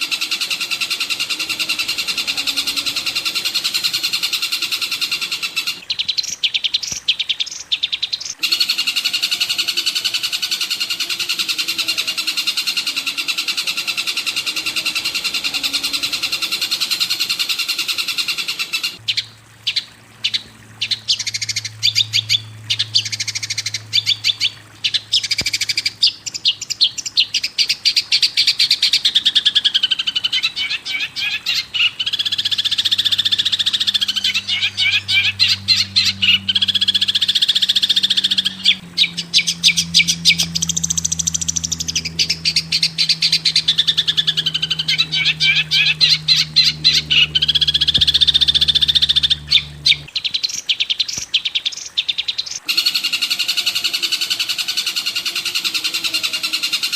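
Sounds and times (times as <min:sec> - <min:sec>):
songbird chattering and trilling: 0:00.0 - 0:19.3, 0:30.0 - 0:51.2
high bird chorus: 0:00.0 - 0:27.3, 0:29.6 - 0:56.9.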